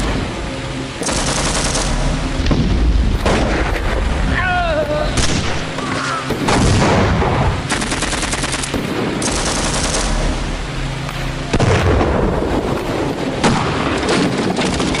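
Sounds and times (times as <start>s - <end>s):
automatic gunfire: 1.0s - 2.2s, 6.5s - 10.4s.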